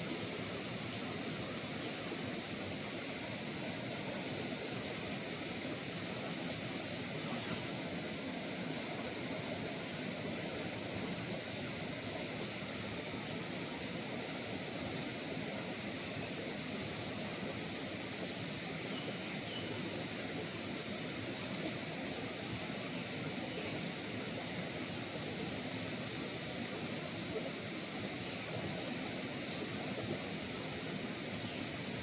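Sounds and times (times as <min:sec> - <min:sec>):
outdoor background noise: 0:00.0 - 0:32.0.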